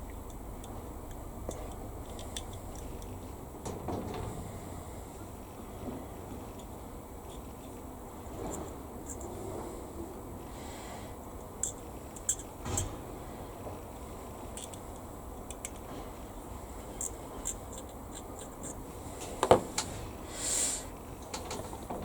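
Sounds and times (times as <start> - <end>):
plastic parts clicking and tapping: 14.6 - 14.8, 21.2 - 22.0.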